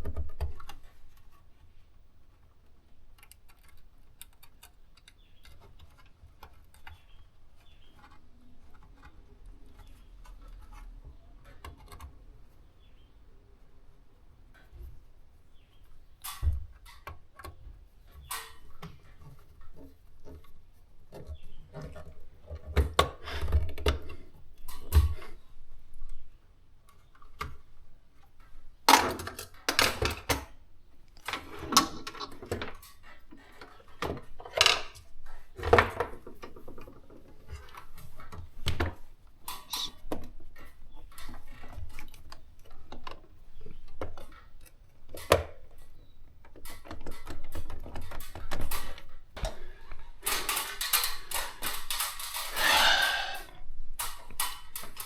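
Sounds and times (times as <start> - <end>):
tools and hardware rattling: 50.2 - 53.4.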